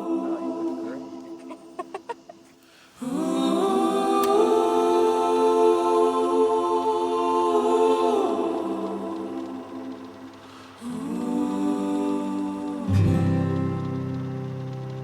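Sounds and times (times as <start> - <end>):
choir-like vocal chords: 0.0 - 15.0.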